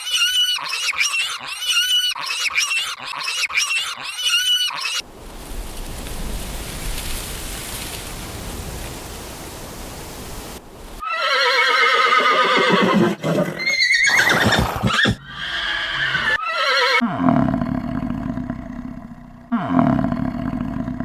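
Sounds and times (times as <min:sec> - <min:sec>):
ambient hiss: 0:05.0 - 0:11.0
horse whinnying: 0:11.0 - 0:17.3.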